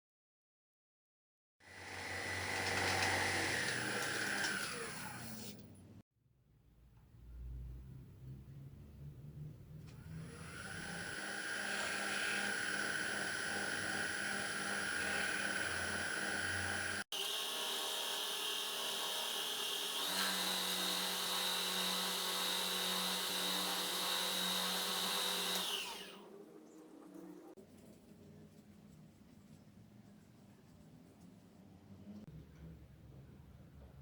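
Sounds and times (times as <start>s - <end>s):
power tool motor whine: 1.7s - 5.6s, 10.1s - 26.3s.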